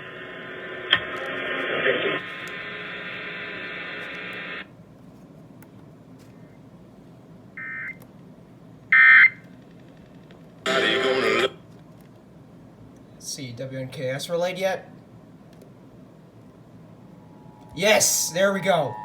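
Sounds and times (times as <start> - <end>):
radio hiss: 0.0 - 4.7, 10.7 - 11.6
buzzy digital data bursts: 17.3 - 19.0.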